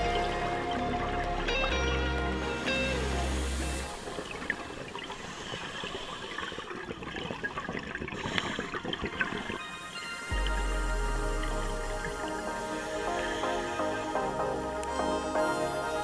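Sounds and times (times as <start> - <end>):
underwater water noise: 0.0 - 16.0.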